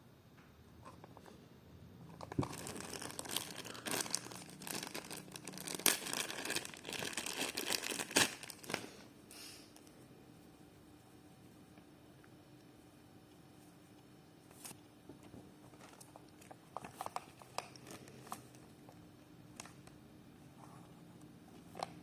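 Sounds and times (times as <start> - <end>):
packaging crinkling and rustling: 2.1 - 9.0, 14.6 - 20.0.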